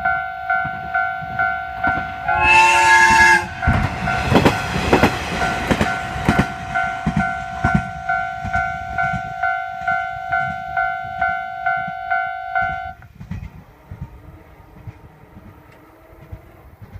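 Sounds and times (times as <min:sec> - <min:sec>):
train wheels clacking over joints: 0:01.8 - 0:10.6, 0:13.0 - 0:16.9
level crossing bell ringing: 0:06.4 - 0:13.0.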